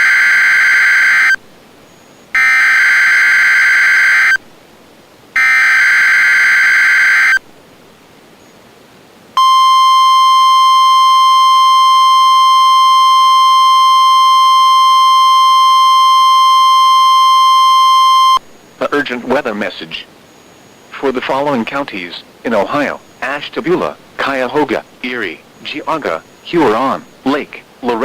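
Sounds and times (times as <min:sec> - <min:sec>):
steady warning alarm tone: 0:00.0 - 0:04.4, 0:05.4 - 0:07.5, 0:09.4 - 0:19.7
warbling digital data screech: 0:02.4 - 0:04.4, 0:05.4 - 0:07.4.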